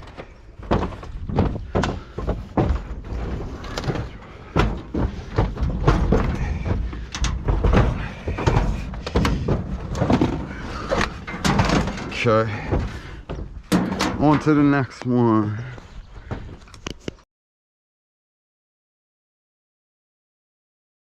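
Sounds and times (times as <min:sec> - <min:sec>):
sheet metal knocks and clanks: 0:00.7 - 0:14.6.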